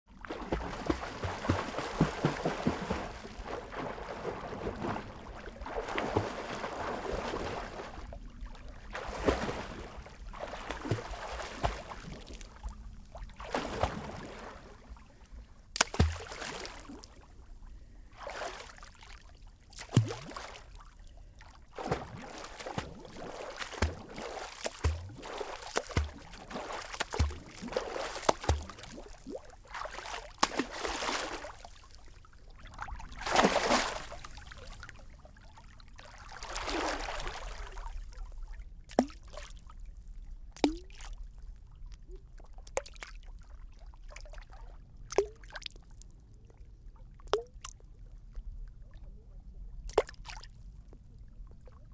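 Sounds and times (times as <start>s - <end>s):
water plops and drips: 0.2s - 8.1s, 8.9s - 12.8s, 15.8s - 17.2s, 19.7s - 20.8s, 21.8s - 31.8s, 33.1s - 34.8s, 38.9s - 39.5s, 40.6s - 41.2s, 45.1s - 45.8s, 47.2s - 47.8s, 49.9s - 50.5s
swimming splashes: 0.2s - 15.0s, 15.8s - 17.3s, 18.2s - 32.1s, 32.8s - 35.0s, 36.2s - 37.8s.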